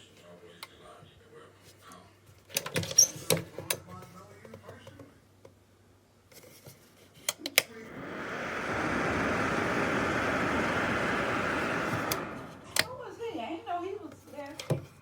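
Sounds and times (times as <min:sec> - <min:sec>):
heater switch clicks: 0:07.6 - 0:13.0
fan heater rush of air: 0:07.6 - 0:13.7.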